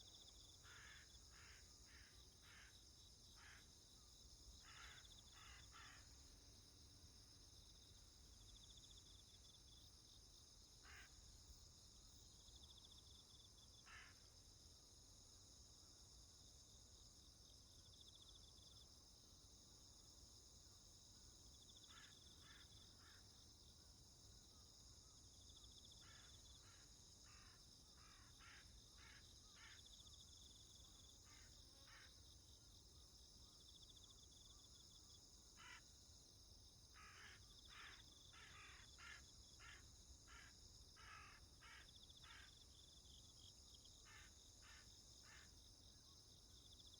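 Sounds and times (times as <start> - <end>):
high insect chorus: 0.0 - 46.9
faint crows cawing: 0.6 - 2.8, 3.4 - 3.7, 4.6 - 6.2, 13.8 - 14.3, 21.8 - 23.3, 26.0 - 29.9, 35.6 - 35.8, 37.0 - 42.6.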